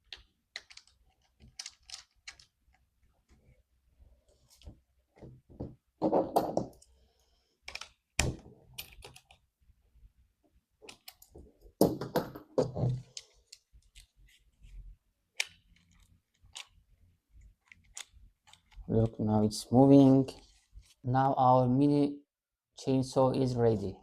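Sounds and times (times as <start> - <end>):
plastic and metal parts clicking: 15.4 - 16.8, 17.4 - 19.1.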